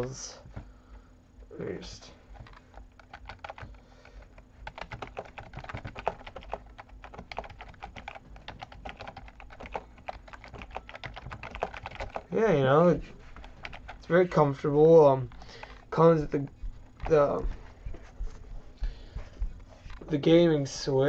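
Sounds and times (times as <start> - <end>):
keyboard keys clicking: 2.4 - 12.3, 13.4 - 14.0.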